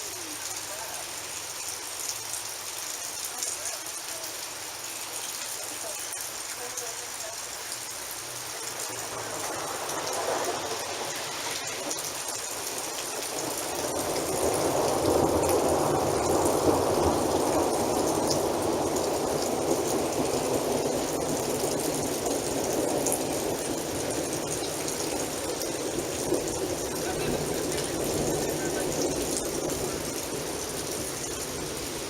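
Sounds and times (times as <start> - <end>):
steady rain: 0.0 - 32.0
rolling thunder: 8.9 - 32.0.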